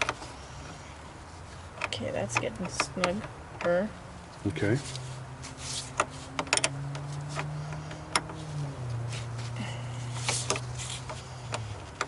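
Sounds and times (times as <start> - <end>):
wrench clicking on bolt: 6.4 - 8.4.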